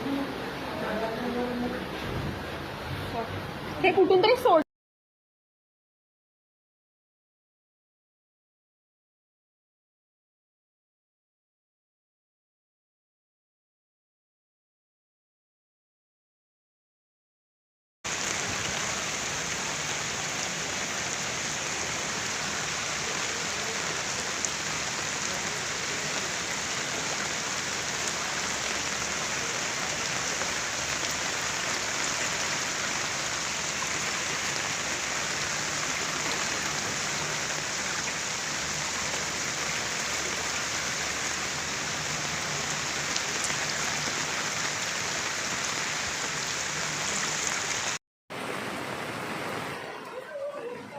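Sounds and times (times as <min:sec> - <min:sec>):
steady water noise: 0:18.1 - 0:50.9.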